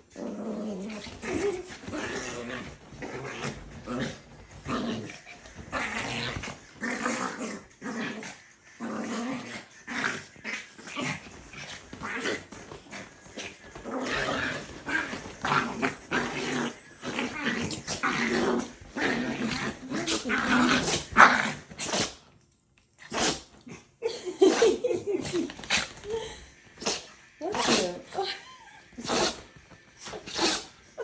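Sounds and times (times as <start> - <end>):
small dogs growling and snarling: 0.0 - 31.0.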